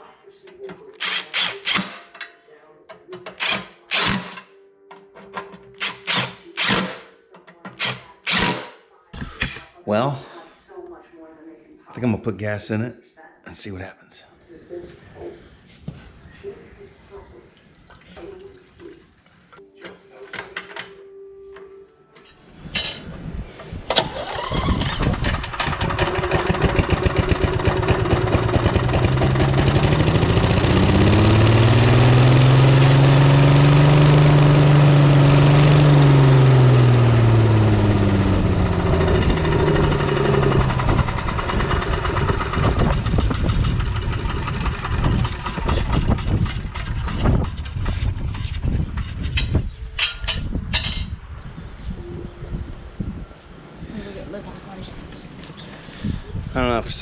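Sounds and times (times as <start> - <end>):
wood chipper engine running: 23.9 - 48.4.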